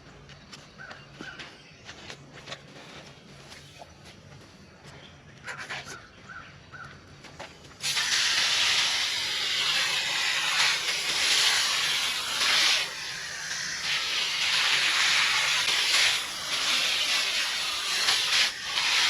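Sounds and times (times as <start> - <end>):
hose spraying water: 7.8 - 19.0.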